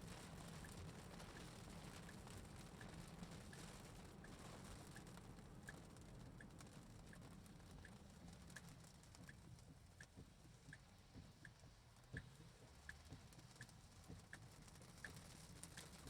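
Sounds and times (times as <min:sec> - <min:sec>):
light rain pattering on car: 0:00.0 - 0:16.0
soft repeating tick: 0:06.4 - 0:09.4, 0:10.0 - 0:11.6, 0:13.6 - 0:16.0.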